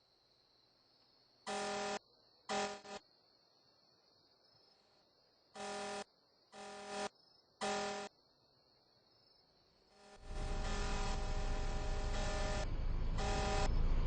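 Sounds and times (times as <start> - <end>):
car horn honking: 10.2 - 13.9.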